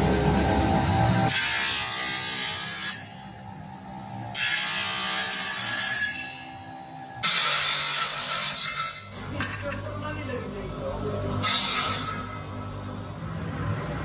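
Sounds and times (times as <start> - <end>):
woodworking tool cutting wood: 0.6 - 3.2, 4.3 - 9.8, 11.4 - 12.6.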